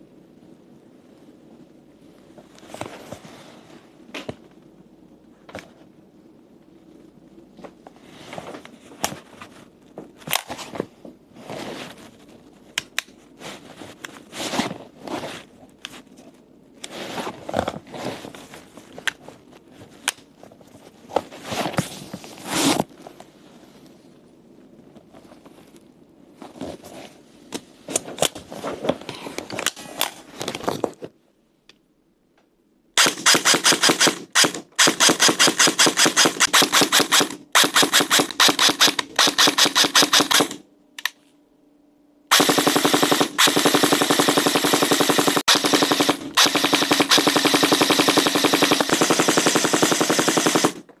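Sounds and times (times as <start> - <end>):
airsoft gun firing full auto: 33.0 - 40.6, 42.3 - 50.8.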